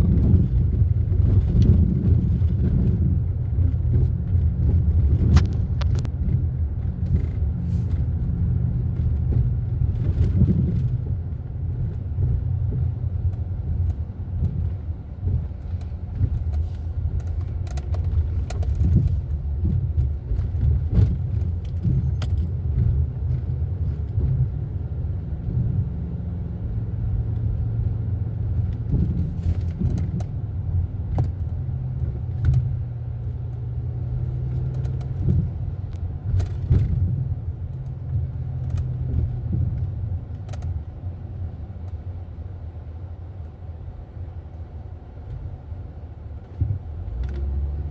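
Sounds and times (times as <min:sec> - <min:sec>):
car engine and road rumble: 0:00.0 - 0:47.9
small clicks and rattles: 0:11.8 - 0:24.4, 0:34.2 - 0:40.9.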